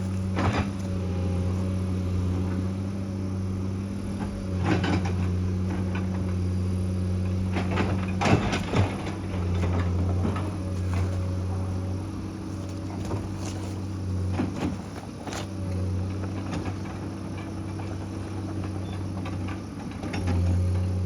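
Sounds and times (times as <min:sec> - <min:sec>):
bucket clanking and scraping rock: 0:00.0 - 0:01.2, 0:07.7 - 0:18.0
excavator diesel engine running: 0:00.0 - 0:21.0.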